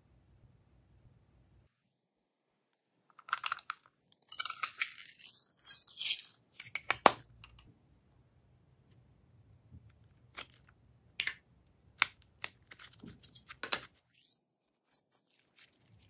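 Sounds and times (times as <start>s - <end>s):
crinkling and clicks: 3.1s - 7.7s, 9.8s - 11.4s, 12.0s - 16.0s.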